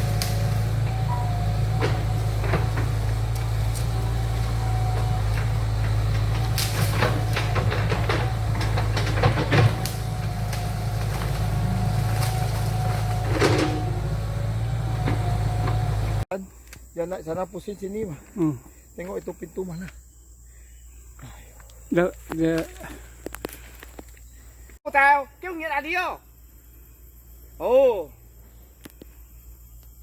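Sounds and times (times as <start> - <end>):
heavy construction machine engine: 0.0 - 16.3.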